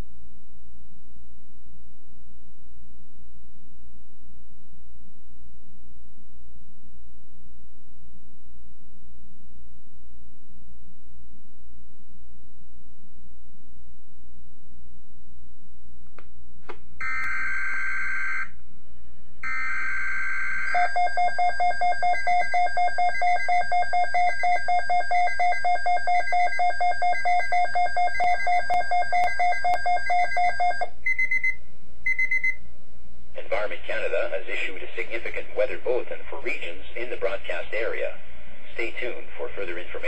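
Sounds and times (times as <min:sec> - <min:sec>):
electronic alarm tone beeping: 0:17.0 - 0:18.6, 0:19.4 - 0:32.6.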